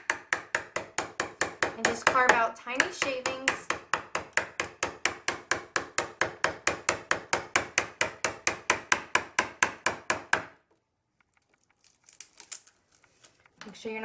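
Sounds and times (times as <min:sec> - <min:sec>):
hammer tapping wood chisel: 0:00.0 - 0:10.7.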